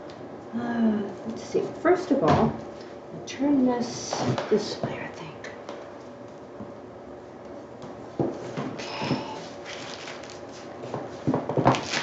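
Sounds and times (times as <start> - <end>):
rustling or scraping: 8.3 - 12.0.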